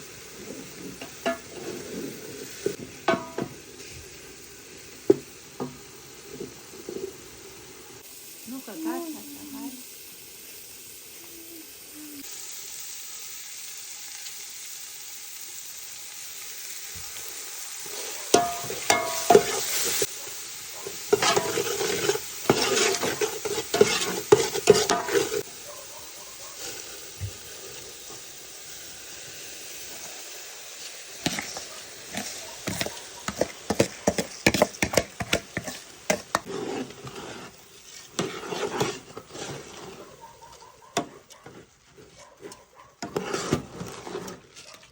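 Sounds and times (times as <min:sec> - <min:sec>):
food sizzling in hot oil: 0:00.0 - 0:44.9
spoon stirring and scraping pot: 0:00.4 - 0:04.0, 0:17.8 - 0:20.1, 0:20.8 - 0:25.5, 0:31.1 - 0:44.9.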